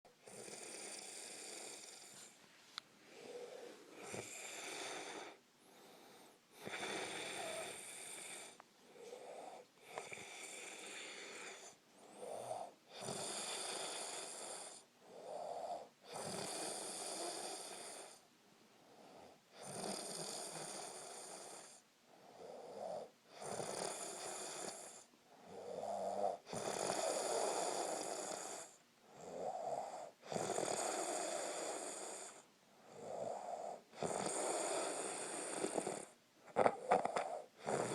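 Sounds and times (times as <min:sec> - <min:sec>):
man snoring loudly: 0:00.2 - 0:02.2, 0:03.3 - 0:05.4, 0:06.6 - 0:08.6, 0:09.3 - 0:18.2, 0:19.6 - 0:21.8, 0:22.6 - 0:37.9.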